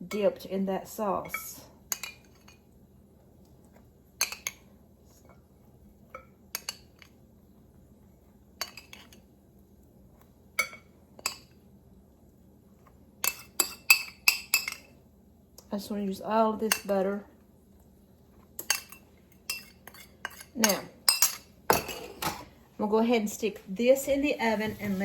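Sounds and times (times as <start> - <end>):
spoon clinking against dish: 13.2 - 14.9, 18.6 - 22.1.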